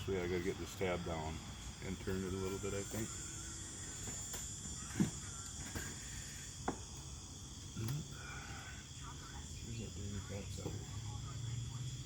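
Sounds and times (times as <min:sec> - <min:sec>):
crickets chirring: 0:00.0 - 0:12.0.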